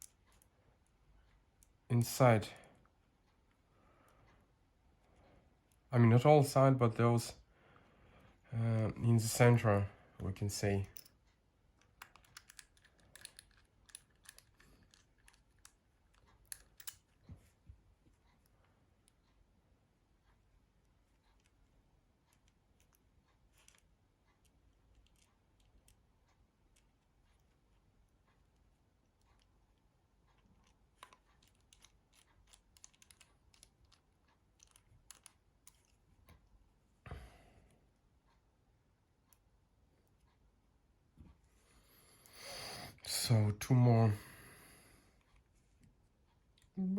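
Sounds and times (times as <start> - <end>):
small clicks of phone parts: 11.8 - 17.3, 22.3 - 23.9, 24.9 - 26.0, 30.3 - 36.0.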